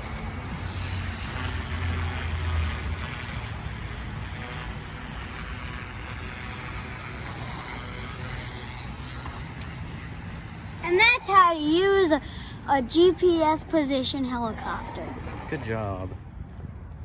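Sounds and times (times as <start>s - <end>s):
rc helicopter rotor whir: 0.0s - 16.1s.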